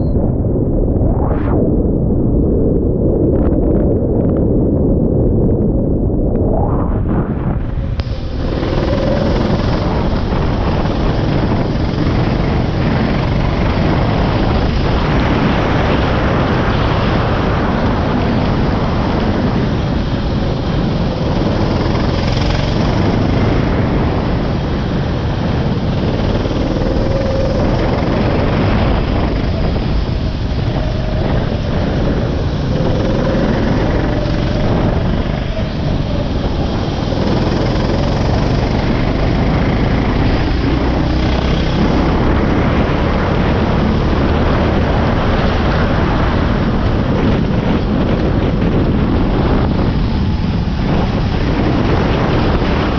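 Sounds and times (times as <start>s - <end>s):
wind rush on microphone: 0.0s - 52.9s
go-kart engine revving: 7.6s - 47.1s.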